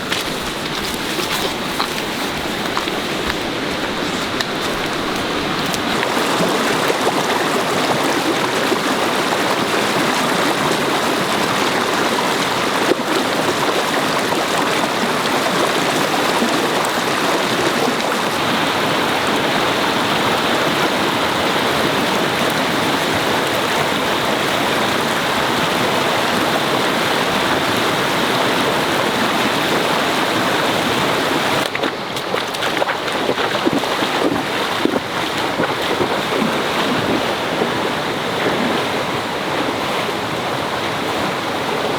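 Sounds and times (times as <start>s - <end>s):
flowing water rushing: 0.0s - 41.9s.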